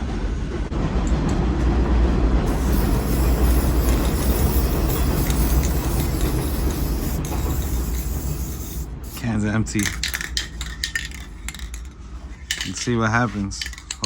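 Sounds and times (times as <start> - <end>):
loud steady low rumble: 0.0 - 12.6
spray paint can hissing: 2.5 - 11.8.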